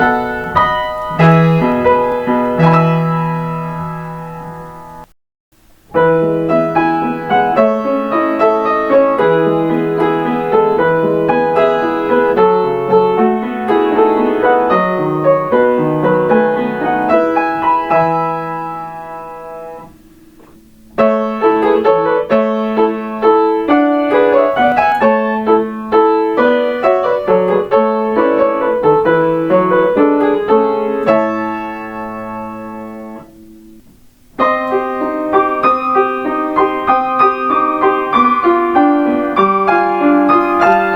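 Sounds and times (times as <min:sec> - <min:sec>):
solo piano melody: 0:00.0 - 0:40.9.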